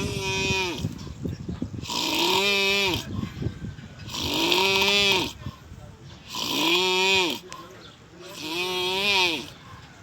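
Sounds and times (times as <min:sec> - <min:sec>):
rhythmic snoring: 0:01.8 - 0:03.1, 0:04.1 - 0:05.4, 0:06.3 - 0:07.5.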